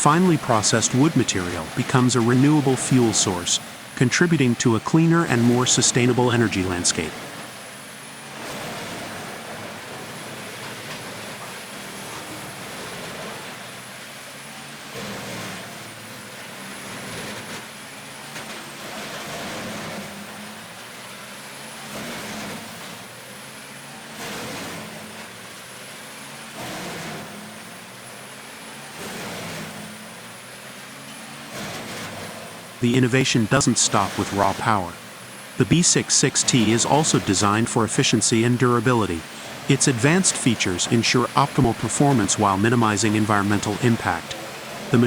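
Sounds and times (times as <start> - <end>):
faint high whine: 0.0 - 7.4, 32.8 - 45.0.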